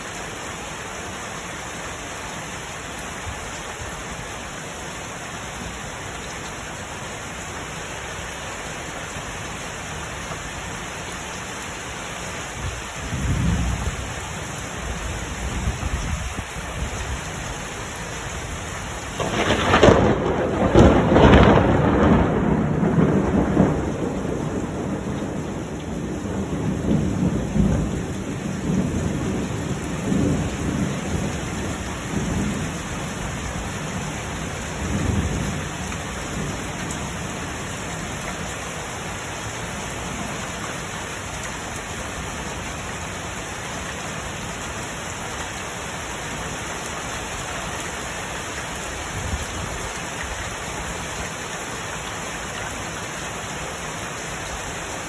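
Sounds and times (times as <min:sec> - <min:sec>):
steady rain: 0:00.0 - 0:55.0
thunder rumbling: 0:19.1 - 0:33.7.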